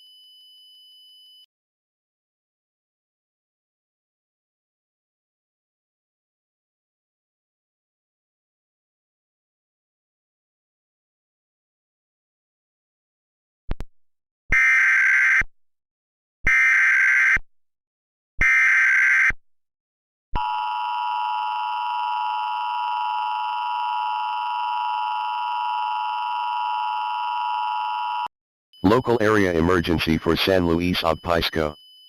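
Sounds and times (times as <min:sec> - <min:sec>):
data tone bursts: 0:28.8 - 0:31.8
two-tone attention signal: 0:28.8 - 0:31.8.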